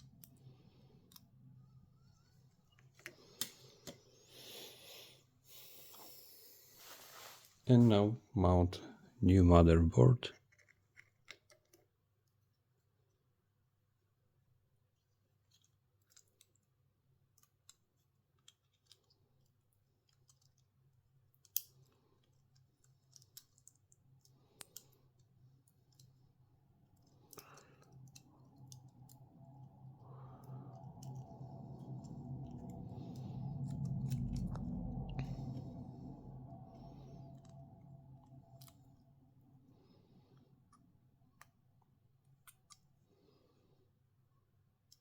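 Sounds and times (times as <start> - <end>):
small parts clicking and tapping: 0.0 - 4.1, 10.3 - 13.2, 15.1 - 35.3, 40.3 - 43.1, 44.6 - 45.0
low hum with higher tone: 0.0 - 7.0, 25.6 - 45.0.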